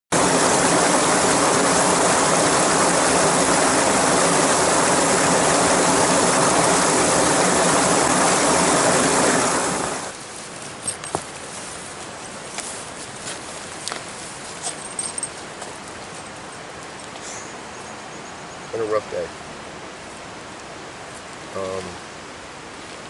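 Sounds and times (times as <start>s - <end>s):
heavy rain pouring: 0.2s - 10.2s.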